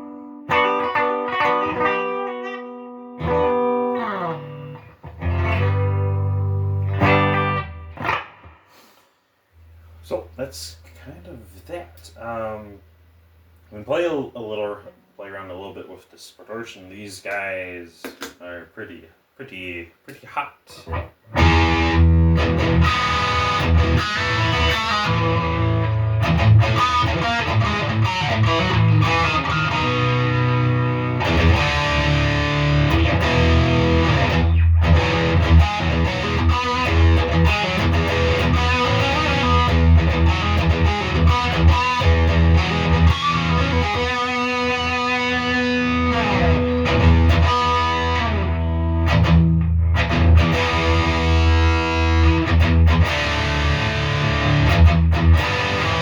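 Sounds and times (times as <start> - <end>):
distorted electric guitar riffs: 0.0 - 8.8, 20.8 - 56.0.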